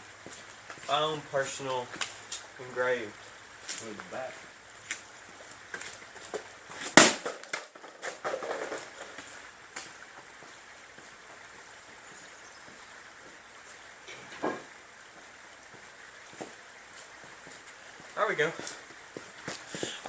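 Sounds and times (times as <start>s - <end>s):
bat smashing plastic jug: 6.8s - 9.0s.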